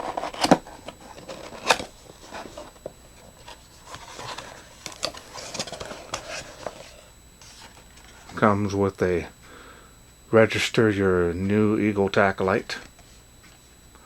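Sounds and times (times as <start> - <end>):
clicking scraping and rustling: 0.0 - 8.4.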